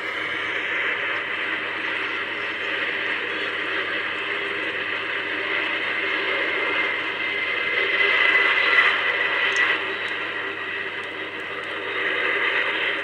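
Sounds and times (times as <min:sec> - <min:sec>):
jet engines roaring at takeoff: 0:00.0 - 0:06.1.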